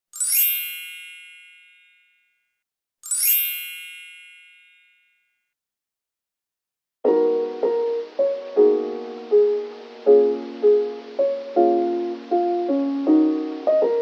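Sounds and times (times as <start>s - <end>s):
high chime dings: 0.1s - 5.4s.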